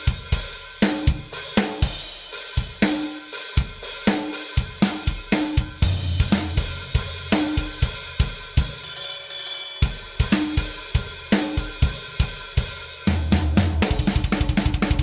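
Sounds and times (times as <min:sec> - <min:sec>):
drum kit beat: 0:00.0 - 0:15.0.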